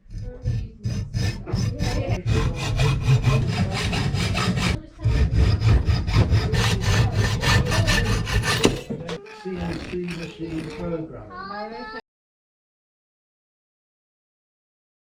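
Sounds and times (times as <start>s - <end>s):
hacksaw cutting metal tube: 0.0s - 10.9s.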